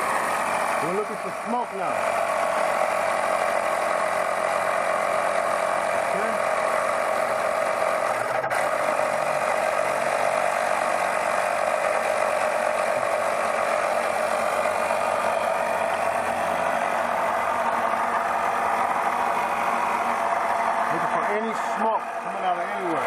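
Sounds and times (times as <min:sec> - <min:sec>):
machine pump hiss and hum: 0:00.0 - 0:23.0.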